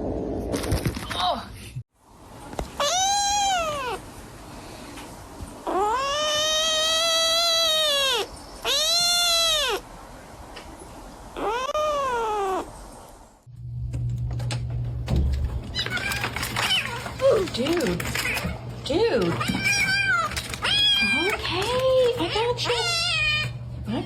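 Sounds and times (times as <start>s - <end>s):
cat yowling meows: 2.8s - 4.0s, 5.6s - 9.8s, 11.4s - 12.7s.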